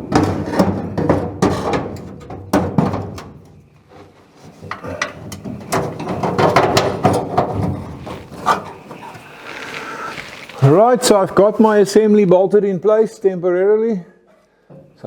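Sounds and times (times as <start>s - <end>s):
metal clunks and scrapes: 0.0s - 9.8s.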